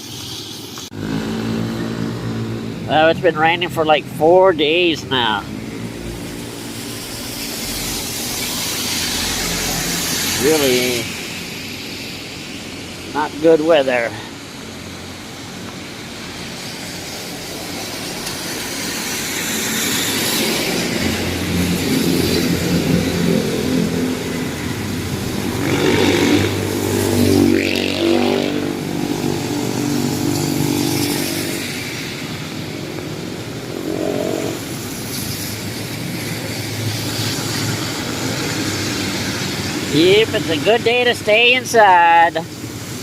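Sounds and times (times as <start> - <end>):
vehicle engines passing: 0.0 - 43.0
motorcycle passing: 0.9 - 11.5, 19.0 - 35.5.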